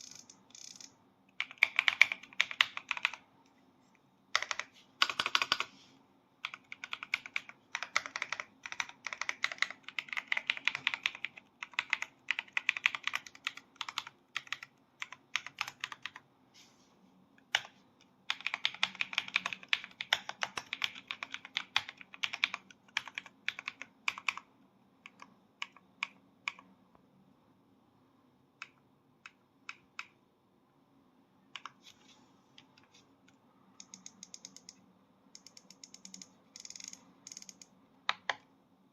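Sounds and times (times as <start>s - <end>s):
mechanical keyboard typing: 0.0s - 3.2s, 4.3s - 5.7s, 6.4s - 16.2s, 17.4s - 17.7s, 18.3s - 26.7s, 33.8s - 34.8s, 35.4s - 38.4s.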